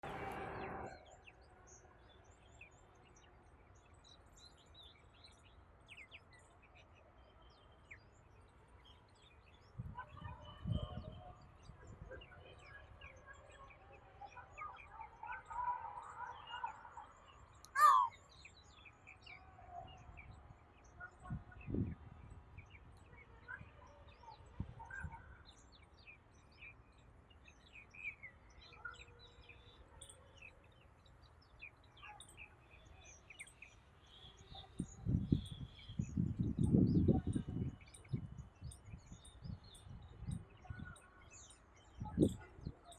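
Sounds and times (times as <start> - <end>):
birds chirping: 16.3 - 19.4, 20.2 - 42.9.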